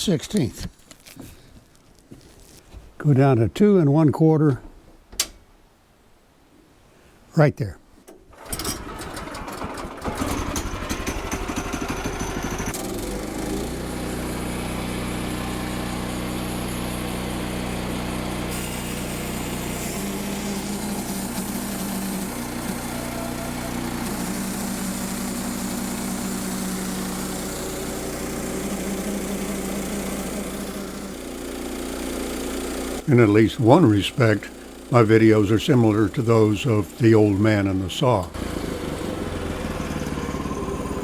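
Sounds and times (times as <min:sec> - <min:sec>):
sawmill engine running: 0:08.3 - 0:41.0
saw blade cutting log: 0:12.2 - 0:40.6.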